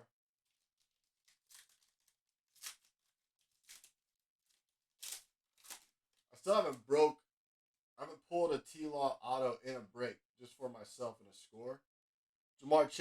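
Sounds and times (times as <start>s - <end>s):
foil card pack crinkling: 0.5s - 6.7s.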